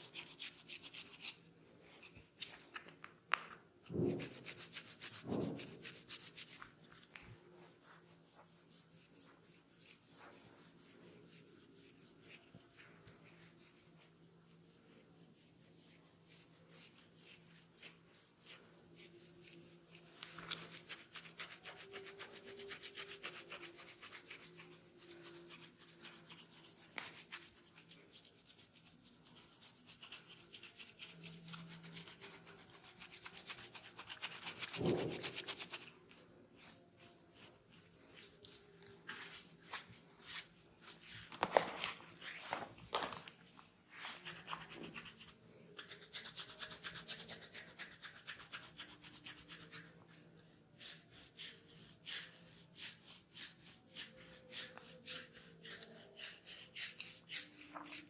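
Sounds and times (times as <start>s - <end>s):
scratching on hair and scalp: 0.0s - 14.1s, 14.8s - 43.2s.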